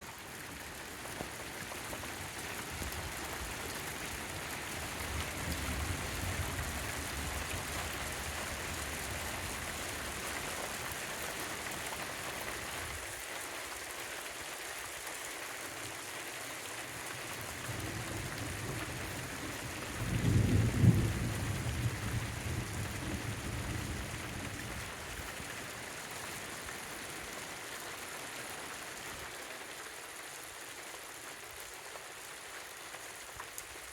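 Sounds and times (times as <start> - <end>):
heavy rain: 0.0 - 33.9
thunder rumbling: 19.9 - 24.7.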